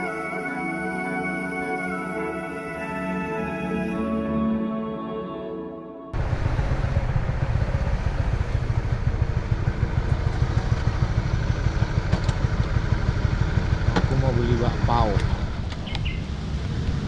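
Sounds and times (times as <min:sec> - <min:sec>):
soft ambient music: 0:00.0 - 0:06.2
motorcycle engine running: 0:06.2 - 0:17.0.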